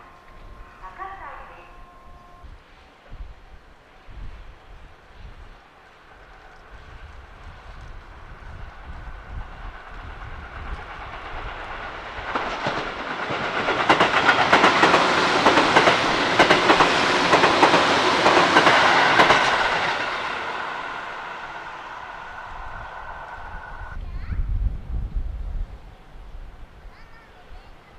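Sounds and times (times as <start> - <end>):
electric train passing: 0.0 - 24.0
wheels clacking over rail joints: 5.7 - 24.0.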